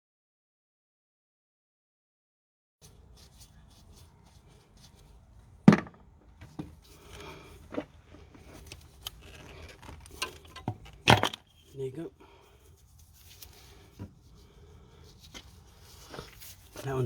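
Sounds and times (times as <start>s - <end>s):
tools handling clicks: 8.4s - 11.7s.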